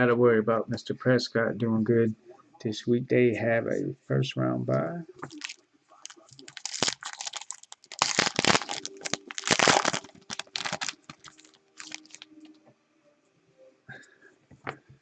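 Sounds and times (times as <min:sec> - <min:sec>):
card pack wrapper tearing and crinkling: 0:05.3 - 0:12.3.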